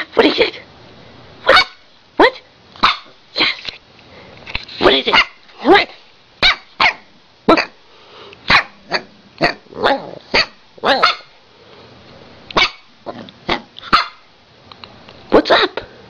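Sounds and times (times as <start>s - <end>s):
dog barking: 1.4s - 1.8s, 2.8s - 3.2s, 5.1s - 5.4s, 6.4s - 7.7s, 8.5s - 11.4s, 12.6s - 12.9s, 13.5s - 14.3s.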